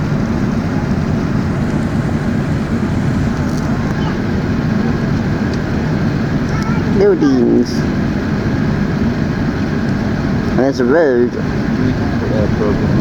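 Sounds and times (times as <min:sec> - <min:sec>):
airplane cabin engine rumble: 0:00.0 - 0:13.0.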